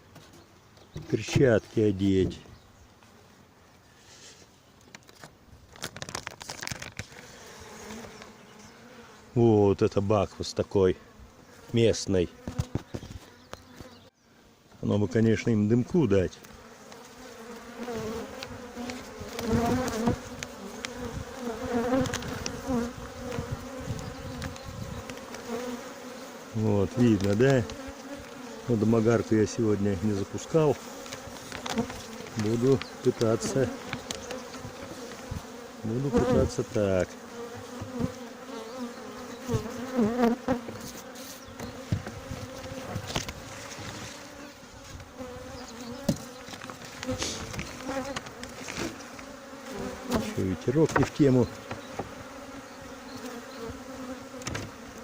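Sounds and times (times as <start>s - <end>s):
bees buzzing: 6.7s - 55.0s
sharp clicks and knocks: 54.4s - 54.7s.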